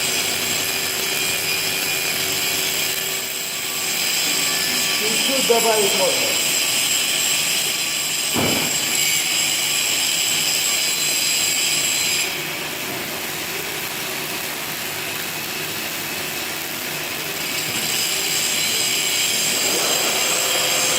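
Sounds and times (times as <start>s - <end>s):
machinery noise: 19.2s - 20.9s.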